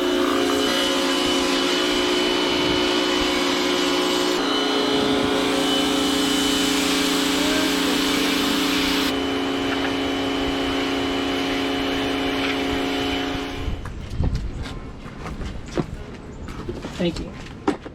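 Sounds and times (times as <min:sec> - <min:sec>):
water jet hissing: 0:00.0 - 0:13.7
pressure washer motor hum: 0:00.0 - 0:14.0.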